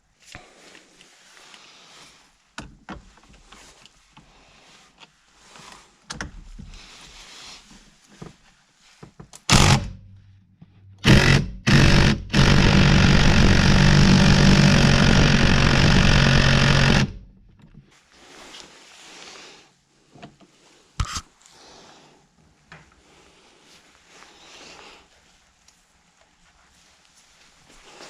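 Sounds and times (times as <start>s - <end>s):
impact wrench hammering: 9.5s - 10.2s, 10.9s - 17.4s.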